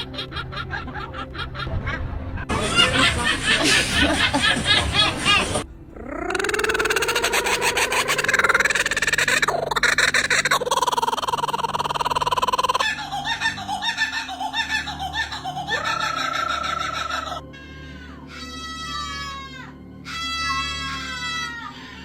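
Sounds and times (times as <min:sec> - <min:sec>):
wavering bird calls: 0:05.0 - 0:22.0
raspy rattling bird call: 0:06.1 - 0:17.4.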